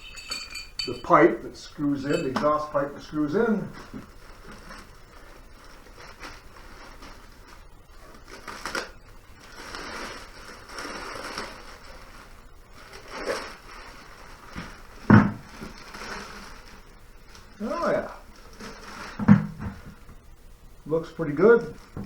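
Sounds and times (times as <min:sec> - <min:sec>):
packing material rustling: 0:00.0 - 0:20.1.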